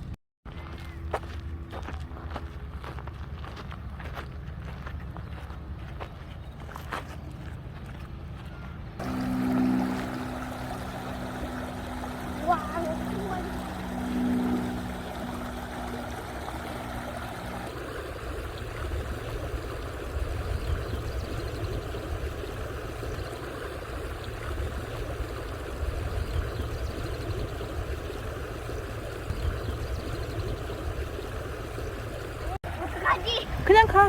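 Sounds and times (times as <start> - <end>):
steady low hum: 8.6 - 34.0
creek water running over rocks: 9.0 - 34.0.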